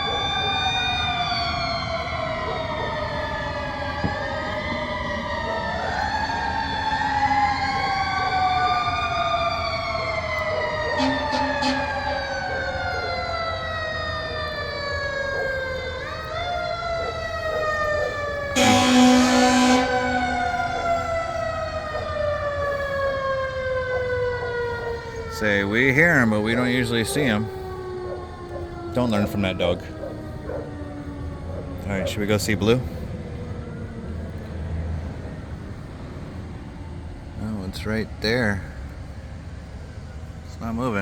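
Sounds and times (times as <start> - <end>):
siren whoop: 0.0 - 36.1
fire truck sirens wailing: 0.0 - 41.0.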